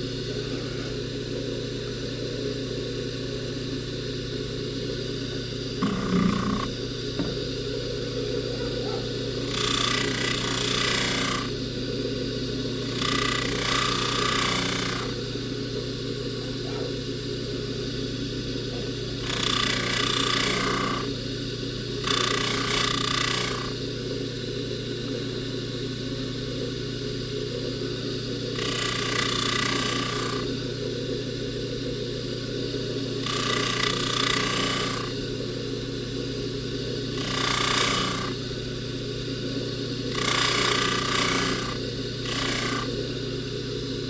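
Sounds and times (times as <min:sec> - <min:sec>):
polishing buffer motor humming: 0:00.0 - 0:44.0
hissing of chain on buffing wheel: 0:09.4 - 0:11.6, 0:12.8 - 0:15.2, 0:19.1 - 0:21.1, 0:22.0 - 0:23.8, 0:28.5 - 0:30.5, 0:33.2 - 0:35.2, 0:37.1 - 0:38.4, 0:40.1 - 0:42.9.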